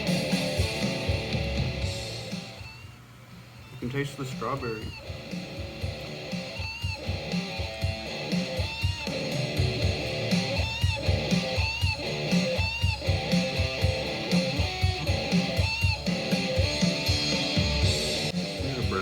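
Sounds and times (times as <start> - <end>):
upbeat guitar music with beat: 0.0 - 19.0.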